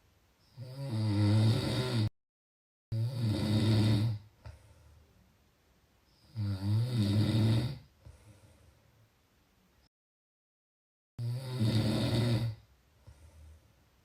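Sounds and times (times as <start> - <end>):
person snoring: 0.5 - 2.1, 2.9 - 4.3, 6.3 - 7.9, 11.2 - 12.6.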